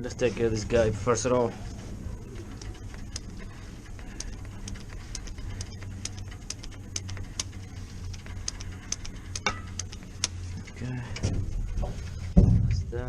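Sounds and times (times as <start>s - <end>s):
steady low hum: 0.0s - 13.0s
light clicks and ticks: 2.2s - 11.3s.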